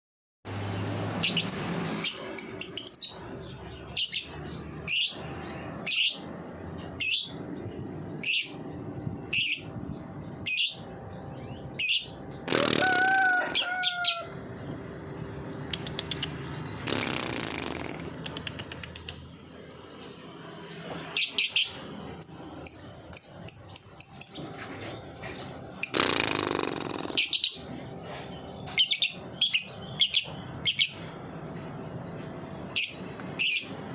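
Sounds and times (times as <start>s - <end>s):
harsh chattering bursts: 12.4s - 13.2s, 15.7s - 19.5s, 25.7s - 27.8s.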